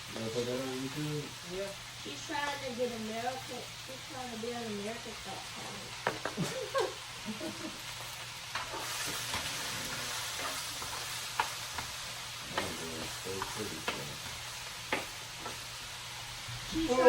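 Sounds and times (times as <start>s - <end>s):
food sizzling in a pan: 0.0s - 17.0s
utensil scraping a pan: 8.5s - 12.0s.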